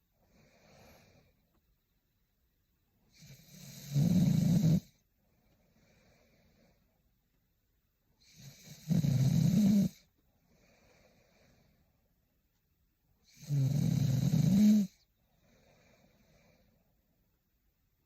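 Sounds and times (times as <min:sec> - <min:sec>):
soft breathing: 0:00.0 - 0:01.7, 0:05.0 - 0:07.3, 0:10.0 - 0:12.4, 0:14.9 - 0:17.4
woman snoring: 0:03.2 - 0:04.9, 0:08.2 - 0:11.3, 0:13.3 - 0:15.0.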